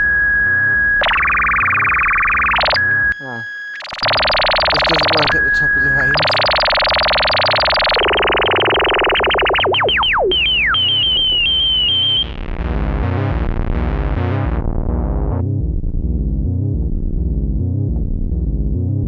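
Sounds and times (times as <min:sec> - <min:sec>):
synthesizer pulsing tone: 0:00.0 - 0:14.6.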